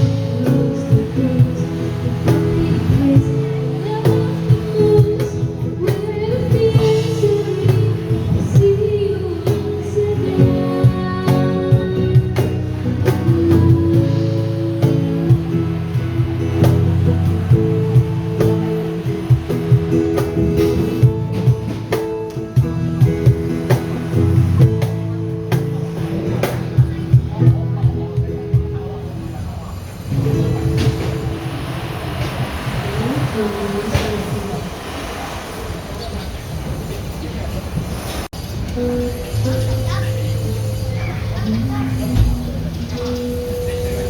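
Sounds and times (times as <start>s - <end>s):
person singing: 0.0s - 17.1s
drum kit beat: 0.0s - 35.0s
strummed guitar: 0.0s - 36.0s, 37.9s - 44.0s.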